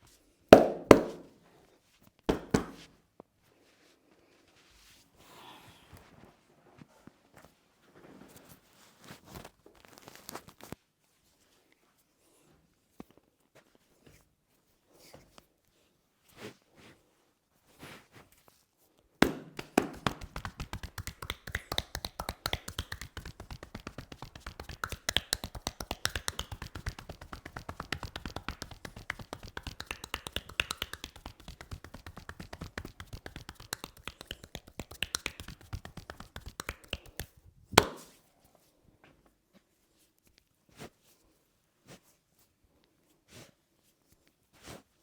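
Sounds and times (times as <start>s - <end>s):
hands slapping a head: 0.6s - 1.3s, 2.3s - 2.9s, 19.2s - 38.2s.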